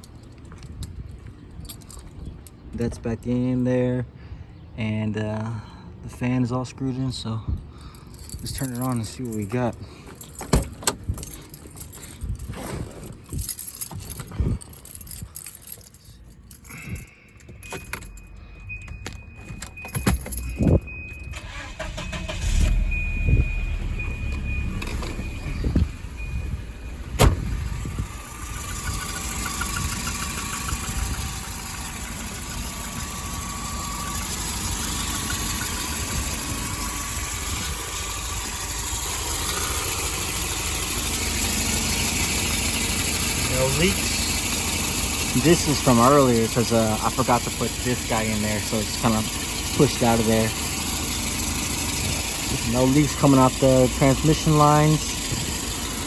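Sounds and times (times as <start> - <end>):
keys jangling: 0.0 - 2.7, 7.6 - 22.3, 51.9 - 55.7
car engine starting and idling: 7.6 - 56.0
high warning tone: 17.6 - 38.5.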